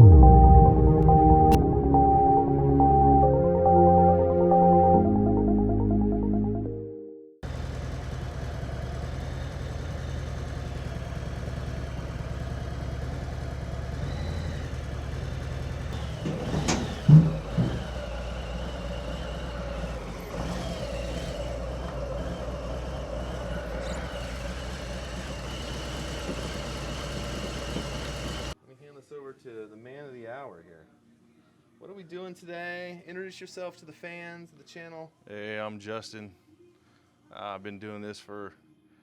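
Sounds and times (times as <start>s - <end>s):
vehicle engine rumbling: 7.4s - 28.6s.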